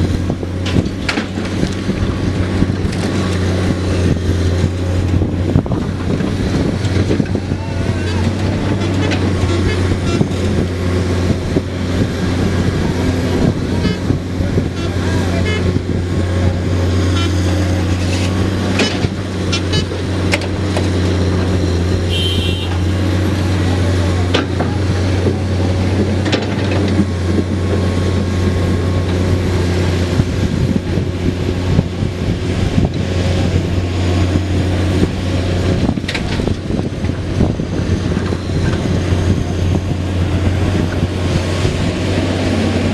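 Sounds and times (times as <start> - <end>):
excavator diesel engine running: 0.0 - 42.9
digging knocks and clatter: 8.2 - 10.6, 24.2 - 28.4.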